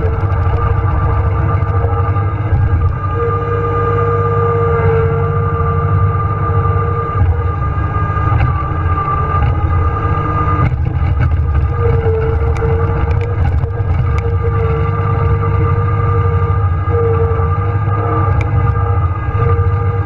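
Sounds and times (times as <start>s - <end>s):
faint ticks and clatter: 0.0s - 3.1s, 8.2s - 10.0s, 10.6s - 20.0s
diesel tractor engine running: 0.0s - 20.0s.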